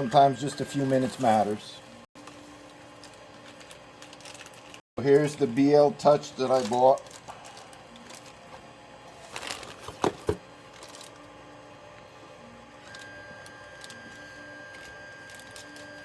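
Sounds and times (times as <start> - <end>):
plastic bag rustling: 2.2 - 11.3, 13.7 - 16.0.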